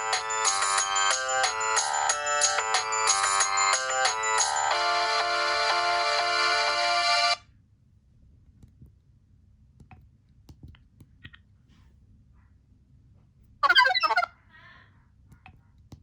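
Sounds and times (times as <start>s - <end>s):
polyphonic ringtone melody: 13.6s - 14.3s.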